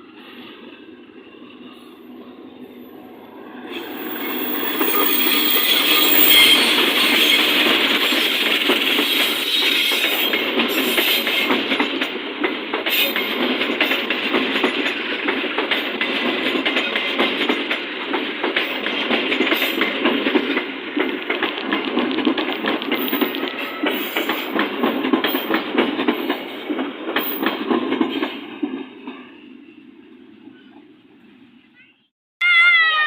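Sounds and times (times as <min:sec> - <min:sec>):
train wheels clicking over rails: 0:03.8 - 0:29.2.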